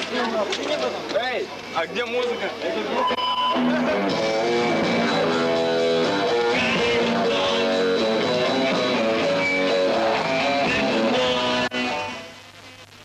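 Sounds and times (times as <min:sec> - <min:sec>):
rock music with guitar: 0:03.5 - 0:12.2.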